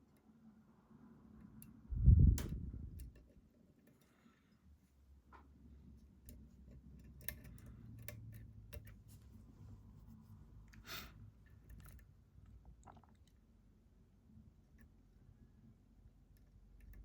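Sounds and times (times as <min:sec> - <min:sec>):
lock pick clicking and scraping: 0:06.1 - 0:09.1, 0:16.3 - 0:17.0.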